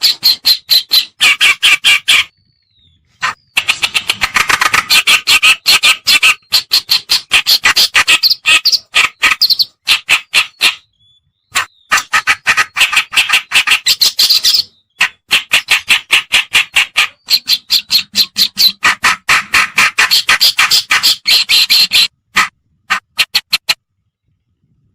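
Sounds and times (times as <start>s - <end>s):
reed warbler chattering: 3.2s - 10.8s.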